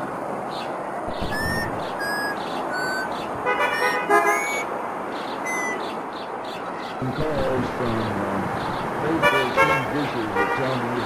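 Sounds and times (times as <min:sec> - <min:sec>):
steady traffic noise: 0:00.0 - 0:11.0
short falling chirps: 0:01.2 - 0:03.1, 0:03.8 - 0:04.7, 0:05.5 - 0:05.8.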